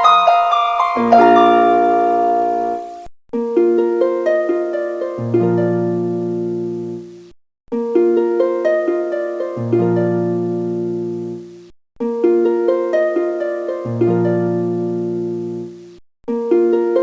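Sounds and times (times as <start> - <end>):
plucked string music: 0.0 - 3.1.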